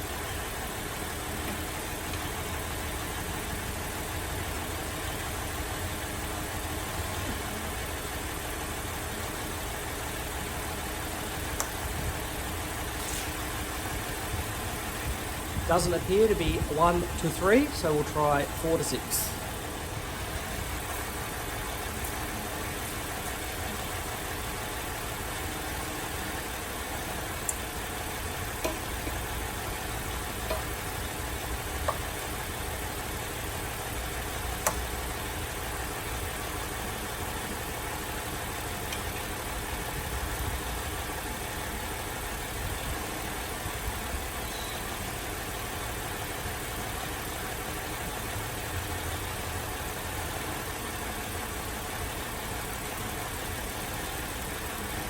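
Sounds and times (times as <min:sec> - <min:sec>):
engine idling roughly: 0:00.0 - 0:55.0.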